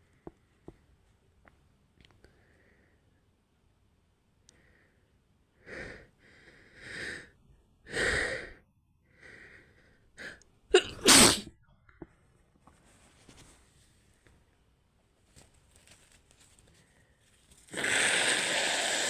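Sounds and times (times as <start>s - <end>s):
woman sneezing: 10.8s - 11.5s.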